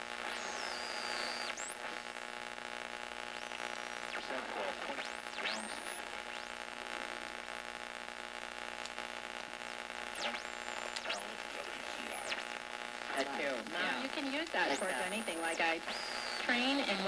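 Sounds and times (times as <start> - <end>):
radio static and hum: 0.0 - 17.0
radio whistles gliding: 0.3 - 1.9, 10.1 - 11.4, 14.6 - 16.6.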